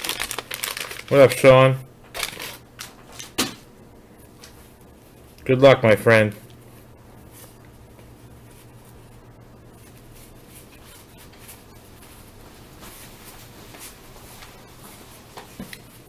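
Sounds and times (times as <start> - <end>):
paper cards rustling: 0.0 - 3.4, 9.7 - 15.6
low steady hum: 0.0 - 16.0.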